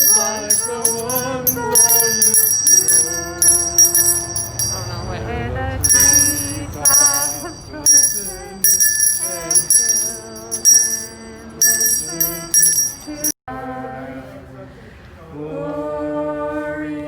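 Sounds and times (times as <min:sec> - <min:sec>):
handbells shaken: 0:00.0 - 0:05.2, 0:05.8 - 0:13.4
people singing carols: 0:00.0 - 0:17.0.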